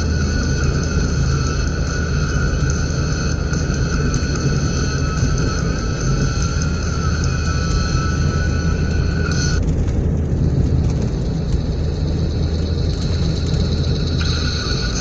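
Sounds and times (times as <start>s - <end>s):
steady high tones: 0.0s - 9.6s, 11.0s - 15.0s
car cabin rumble: 0.0s - 15.0s.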